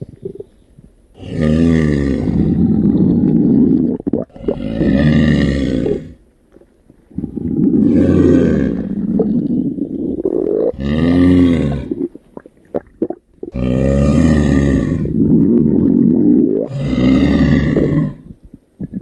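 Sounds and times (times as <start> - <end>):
cartoon stomach growling: 1.2 - 6.2, 7.1 - 19.0.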